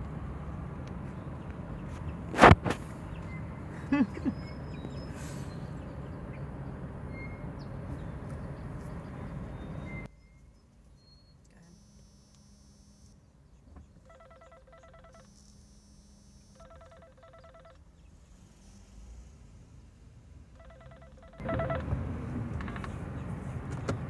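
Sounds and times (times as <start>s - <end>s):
phone ringtone trilling: 14.0s - 17.8s, 20.6s - 21.9s.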